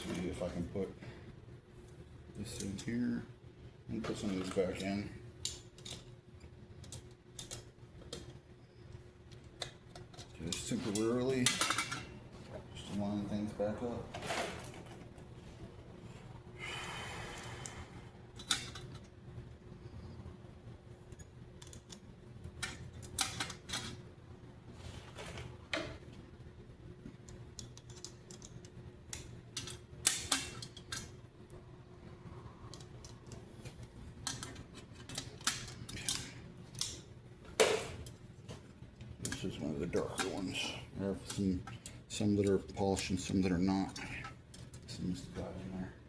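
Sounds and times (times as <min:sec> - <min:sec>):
steady low hum: 0:00.0 - 0:46.0
metal fasteners clicking: 0:06.8 - 0:08.3, 0:09.3 - 0:12.1, 0:18.4 - 0:19.1, 0:21.1 - 0:24.0, 0:27.2 - 0:31.2, 0:34.2 - 0:37.0.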